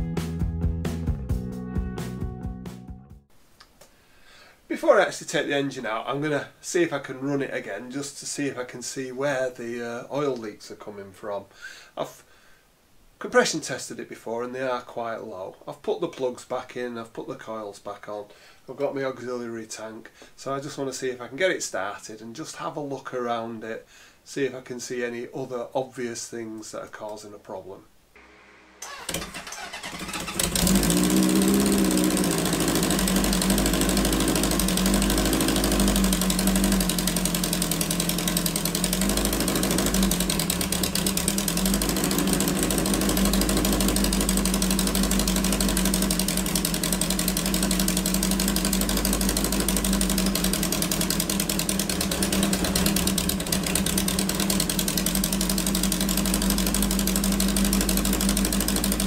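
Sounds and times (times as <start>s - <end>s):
motorcycle engine idling: 28.2s - 59.0s
motorcycle engine starting and revving: 28.2s - 59.0s.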